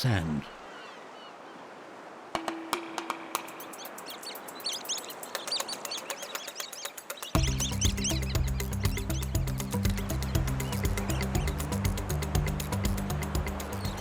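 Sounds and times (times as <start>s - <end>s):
faint steady hiss: 0.0s - 7.4s
shorebirds chirping: 0.0s - 14.0s
low music: 7.4s - 14.0s.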